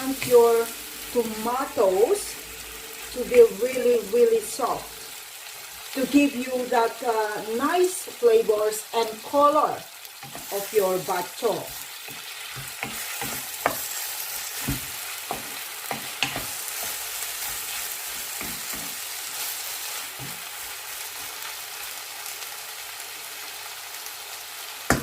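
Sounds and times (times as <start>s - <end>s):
food sizzling in a pan: 0.0s - 25.0s
utensil knocking and scraping pan: 12.1s - 14.0s.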